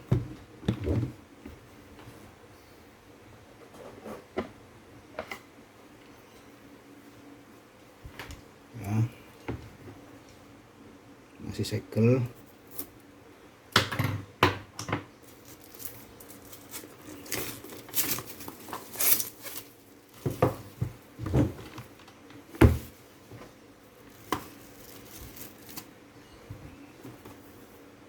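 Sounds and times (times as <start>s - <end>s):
packaging crinkling and rustling: 15.2s - 23.2s, 23.9s - 26.0s.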